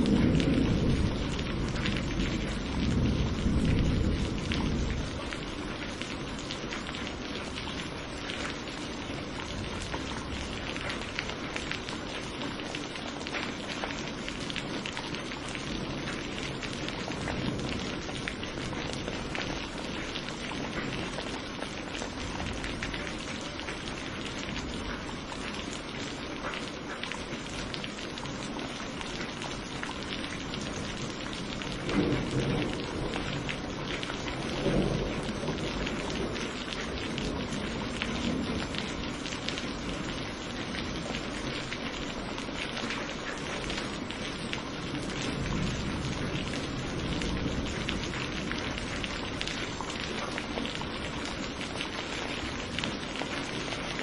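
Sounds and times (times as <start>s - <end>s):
thunder rumbling: 0.0s - 8.2s, 13.5s - 25.0s, 30.2s - 41.8s, 43.8s - 51.3s
steady rain pattering: 0.0s - 54.0s.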